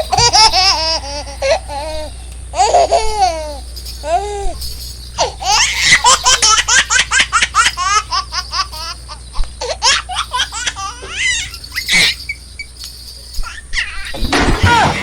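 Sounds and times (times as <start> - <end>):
high-pitched laughter: 0.0 - 4.5, 5.2 - 12.4
loud shriek: 13.8 - 15.0.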